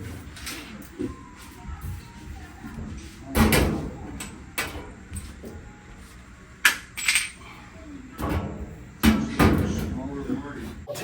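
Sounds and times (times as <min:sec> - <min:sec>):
metal parts clinking: 0:06.7 - 0:07.4.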